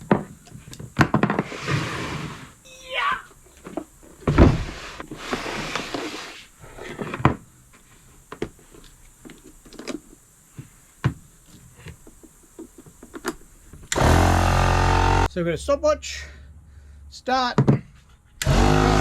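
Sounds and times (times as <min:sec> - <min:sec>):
rustling stretch: 0:00.0 - 0:13.9.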